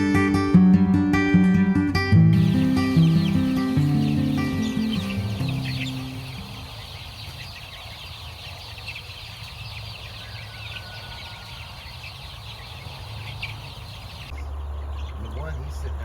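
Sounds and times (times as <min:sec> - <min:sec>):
music: 0:00.0 - 0:06.7
chickens calling: 0:02.1 - 0:16.0.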